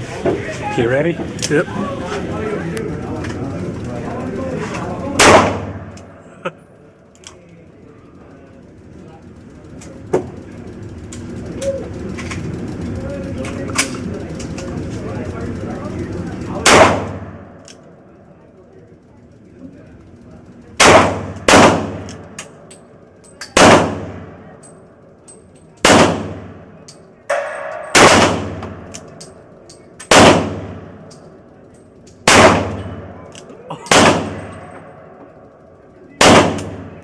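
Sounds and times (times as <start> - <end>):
handgun shots echoing: 5.2 - 6.1, 16.6 - 17.8, 20.8 - 22.2, 23.4 - 24.2, 25.8 - 26.4, 27.3 - 29.4, 30.0 - 31.2, 32.3 - 35.0, 36.2 - 36.9.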